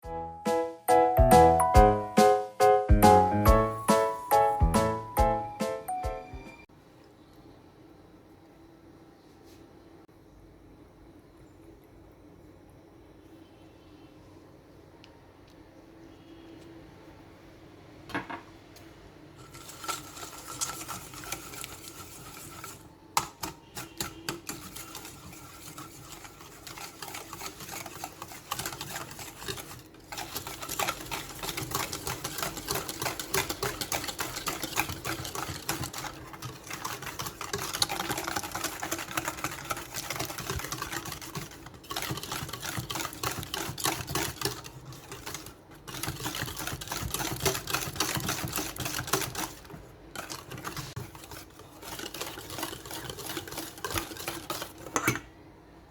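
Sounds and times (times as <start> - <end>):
utensil beating in a bowl: 19.4 - 55.3.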